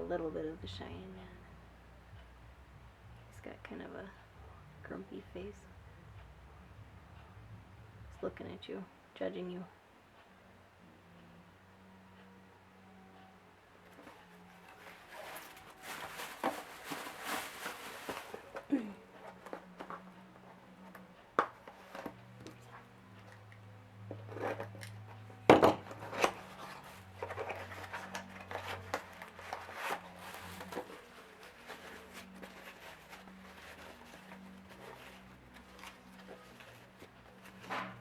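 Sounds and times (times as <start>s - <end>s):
packaging rustling and scraping: 13.8s - 38.0s.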